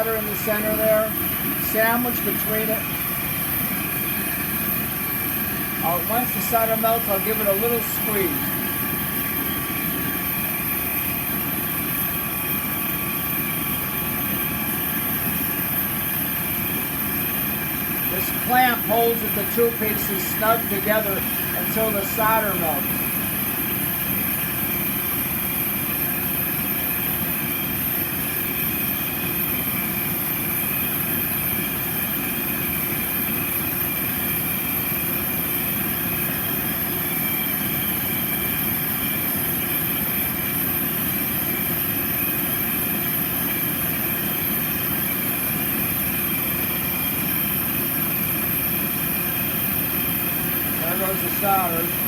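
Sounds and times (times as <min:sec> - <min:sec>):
torch flame roaring: 0:00.1 - 0:25.6.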